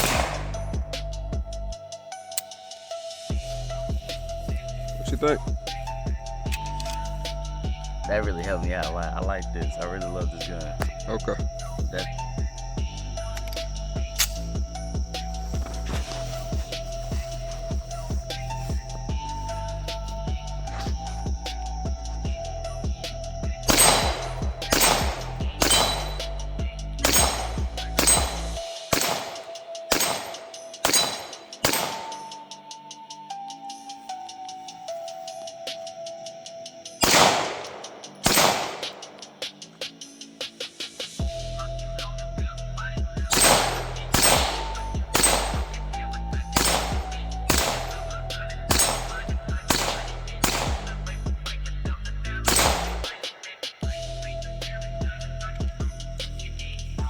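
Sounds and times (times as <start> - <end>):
handgun shots: 0.0 - 0.8, 14.2 - 14.5, 23.7 - 32.4, 37.0 - 39.4, 43.3 - 46.0, 46.6 - 51.2, 52.5 - 53.6
background music with beat and bass: 0.0 - 57.0.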